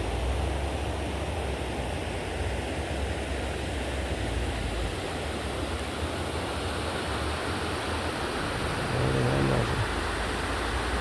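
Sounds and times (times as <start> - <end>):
swollen river rushing: 0.0 - 11.0.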